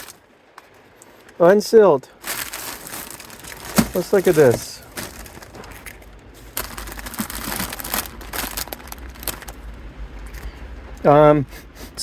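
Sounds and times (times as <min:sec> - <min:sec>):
plastic packaging crinkling: 0:00.0 - 0:00.2, 0:02.2 - 0:09.8.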